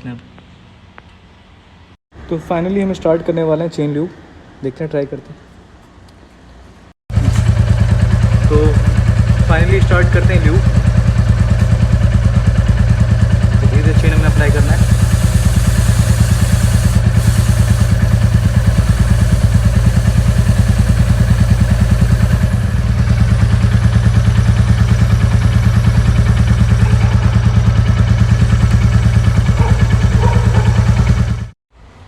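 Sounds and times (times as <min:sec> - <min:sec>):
motorcycle engine running: 0:07.1 - 0:31.6.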